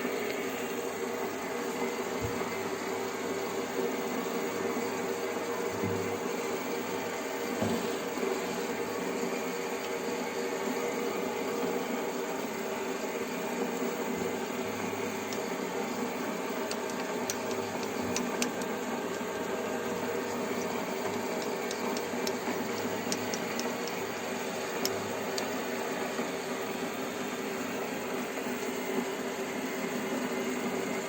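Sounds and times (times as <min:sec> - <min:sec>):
metal lathe motor hum: 0:00.0 - 0:29.2
light ticks: 0:21.4 - 0:24.0, 0:24.8 - 0:25.5.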